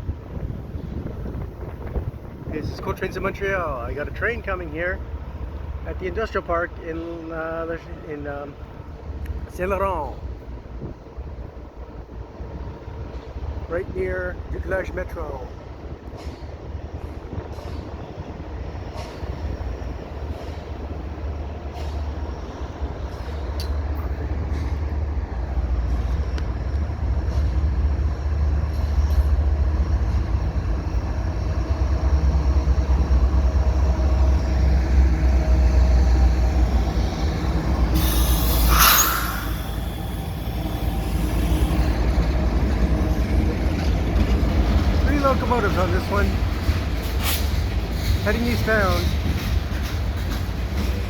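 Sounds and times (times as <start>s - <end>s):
diesel locomotive engine rumble: 0.0s - 51.0s
sharp air hiss: 36.8s - 42.0s.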